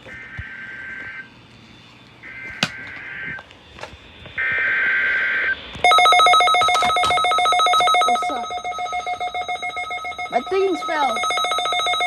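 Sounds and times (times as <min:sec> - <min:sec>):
buzzy data tones: 0:02.2 - 0:12.0.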